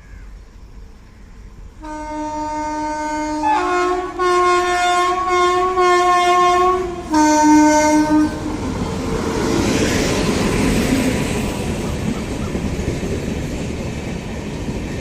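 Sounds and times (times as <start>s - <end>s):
train passing rumble: 0.2s - 15.0s
locomotive horn blast: 1.8s - 8.6s.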